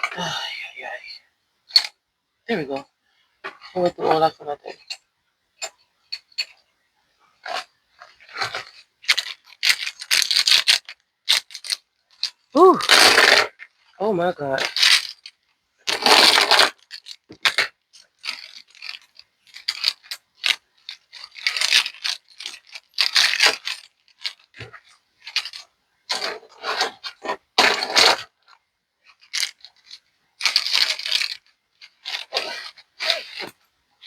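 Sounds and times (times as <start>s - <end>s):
paper crinkling and rustling: 14.7s - 33.6s.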